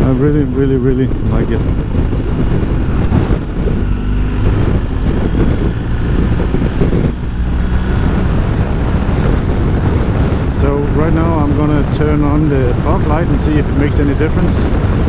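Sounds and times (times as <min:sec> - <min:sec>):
motorcycle engine running: 0:00.0 - 0:15.0
wind rushing over microphone: 0:00.0 - 0:15.0.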